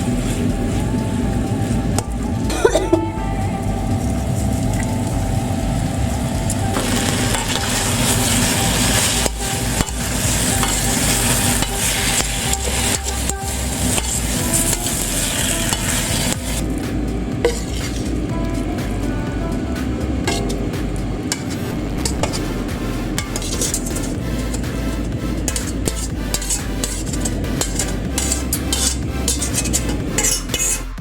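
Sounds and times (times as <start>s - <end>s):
food sizzling in oil: 4.3s - 18.3s, 23.2s - 30.8s
utensil scraping a pan: 17.4s - 18.2s, 23.2s - 31.0s.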